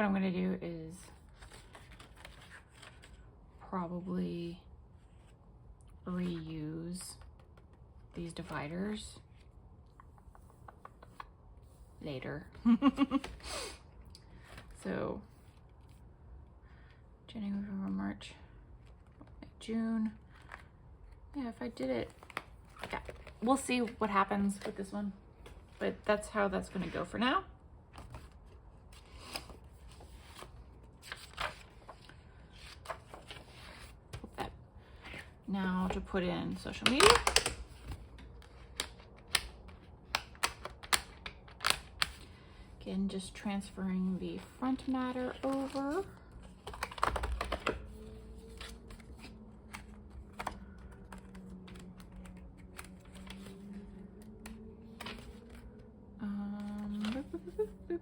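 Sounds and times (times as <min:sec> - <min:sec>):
faint low hum: 0:00.0 - 0:58.0
paper pages rustling: 0:01.1 - 0:03.4, 0:22.0 - 0:24.8, 0:27.9 - 0:36.1, 0:44.8 - 0:55.8, 0:56.6 - 0:57.8
planner pages clicking: 0:36.7 - 0:37.9, 0:38.6 - 0:42.2, 0:46.6 - 0:55.6.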